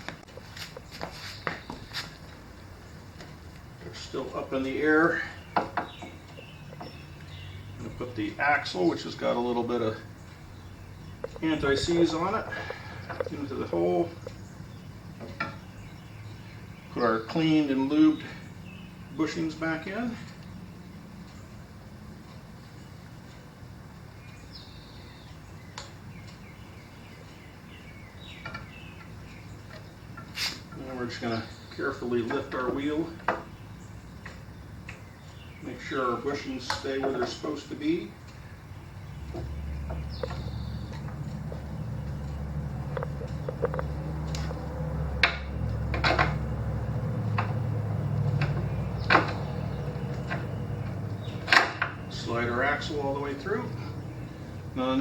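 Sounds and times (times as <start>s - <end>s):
steady low hum: 0.0s - 55.0s
light metal clicks: 34.2s - 46.6s.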